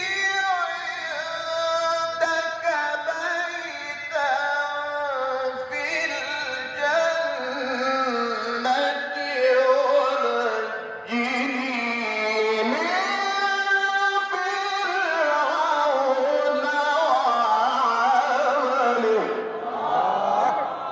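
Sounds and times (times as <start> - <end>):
man chanting melodically: 0.0 - 19.6.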